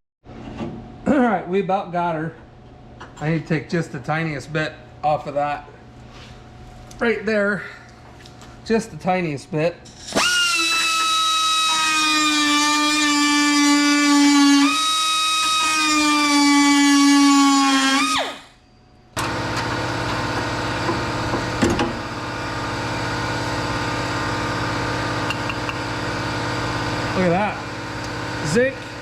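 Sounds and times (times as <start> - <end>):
air compressor humming: 9.9 - 18.6, 19.2 - 29.0
power tool whining on metal: 10.0 - 18.6, 19.2 - 29.0.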